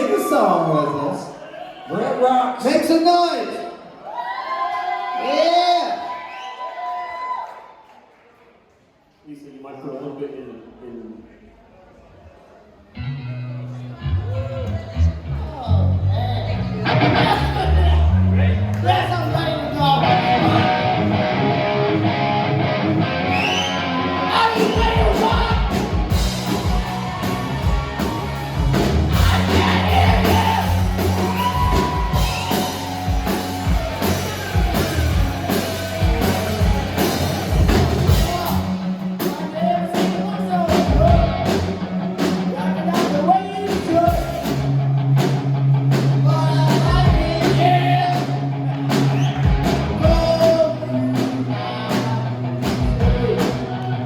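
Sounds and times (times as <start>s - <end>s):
electric guitar: 12.9s - 54.0s
bass notes: 13.0s - 39.3s, 40.6s - 43.0s, 43.6s - 54.0s
drum kit beating: 24.4s - 53.8s
person singing: 29.1s - 31.0s, 46.2s - 48.4s.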